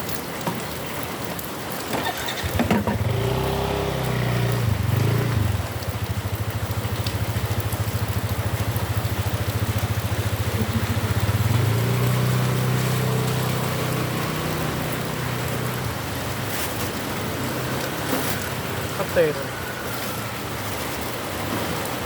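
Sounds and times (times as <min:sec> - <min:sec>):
heavy rain hiss: 0:00.0 - 0:22.0
small engine puttering: 0:01.9 - 0:15.8.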